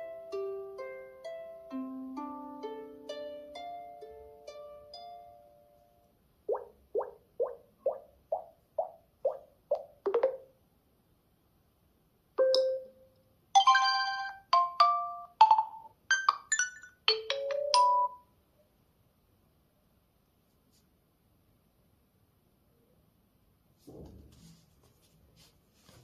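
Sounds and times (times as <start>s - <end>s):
plucked ringtone notes: 9.3s - 10.5s, 12.4s - 18.3s
chime-like ringtone: 12.4s - 13.0s, 13.6s - 18.3s.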